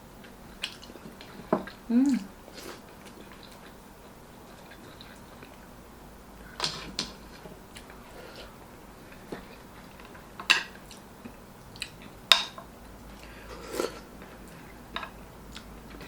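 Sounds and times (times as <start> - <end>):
quiet eating sounds: 0.2 - 16.0
cutlery clinking against a plate: 10.4 - 10.8.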